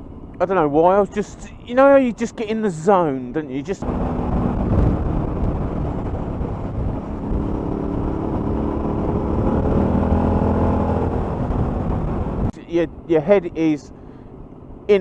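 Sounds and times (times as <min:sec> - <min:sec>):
motorcycle engine running: 0:03.8 - 0:12.5
wind rush: 0:03.8 - 0:12.6.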